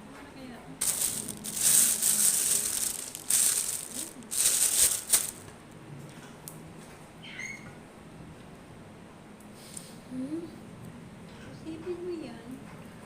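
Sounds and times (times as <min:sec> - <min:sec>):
rustling and rattling: 0:00.8 - 0:05.5.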